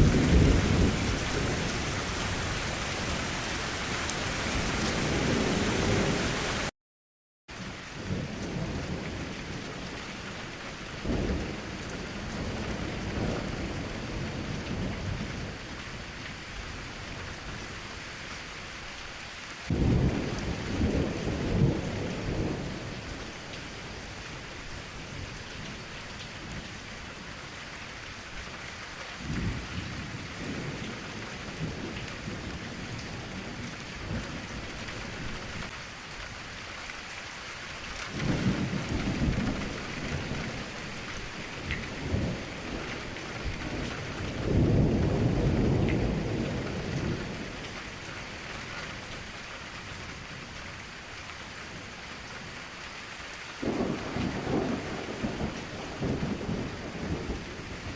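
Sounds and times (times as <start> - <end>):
steady rain: 0.0 - 6.7, 7.5 - 57.9
thunder rumbling: 0.0 - 6.7, 19.7 - 23.4, 38.1 - 47.7, 53.6 - 57.9.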